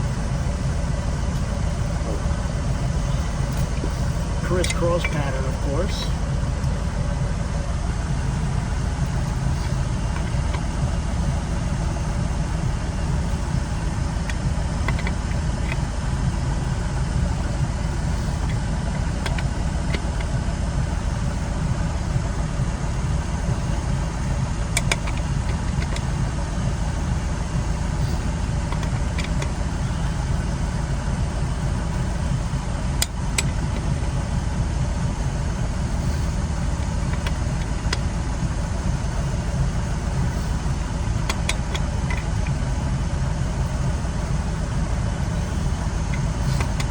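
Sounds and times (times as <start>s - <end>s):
vehicle engine running: 0.0s - 46.9s
lug wrench tightening nuts: 3.0s - 6.0s, 14.3s - 15.9s, 18.0s - 20.4s, 24.8s - 26.2s, 27.9s - 29.6s, 36.0s - 38.1s, 40.1s - 42.6s, 45.3s - 46.9s.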